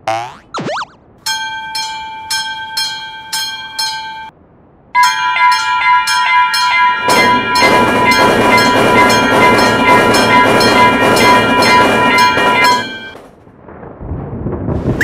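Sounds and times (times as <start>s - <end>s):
passing train rumble: 1.0s - 15.0s
railroad crossing bell ringing: 1.2s - 4.4s, 5.0s - 13.2s.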